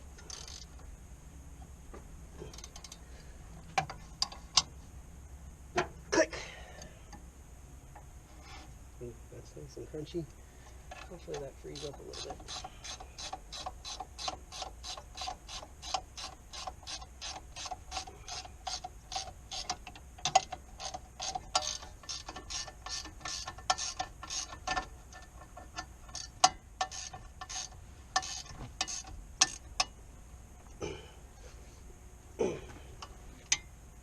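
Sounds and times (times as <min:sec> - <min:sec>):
ratchet wrench clicking: 0:00.2 - 0:00.7, 0:02.5 - 0:03.0, 0:10.9 - 0:30.0.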